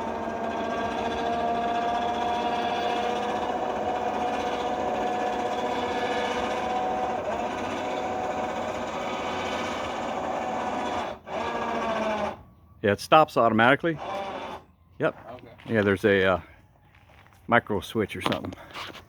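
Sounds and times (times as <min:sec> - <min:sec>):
electric motor whine: 0:00.0 - 0:12.4, 0:14.0 - 0:14.7.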